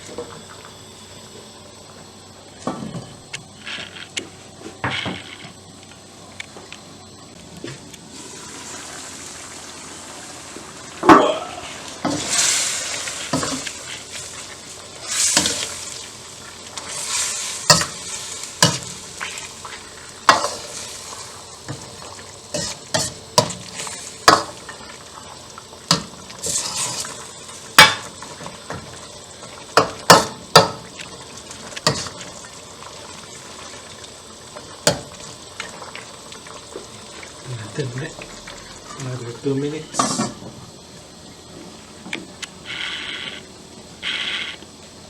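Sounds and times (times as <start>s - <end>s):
stew sizzling: 0.0s - 45.0s
utensil scraping a cooking pot: 26.3s - 27.2s.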